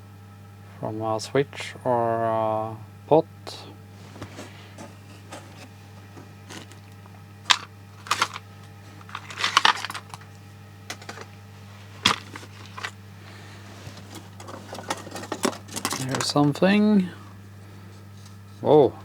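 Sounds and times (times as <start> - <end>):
steady low hum: 0.0 - 19.0
rustling: 3.9 - 16.4.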